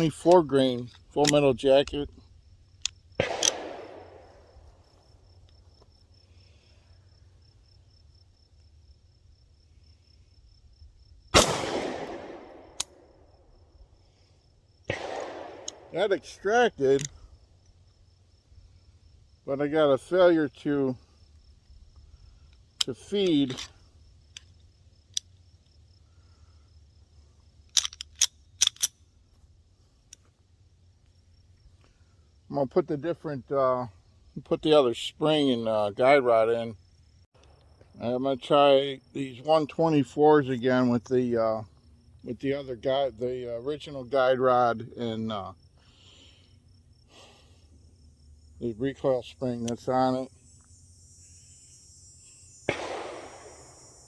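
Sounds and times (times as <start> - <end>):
pistol metallic clicks: 0.0 - 2.1, 2.8 - 4.3, 11.4 - 13.1, 14.9 - 15.9, 16.8 - 17.8, 27.7 - 29.0
pistol shot: 3.2 - 4.5, 11.4 - 13.1, 14.9 - 15.9, 52.7 - 54.0.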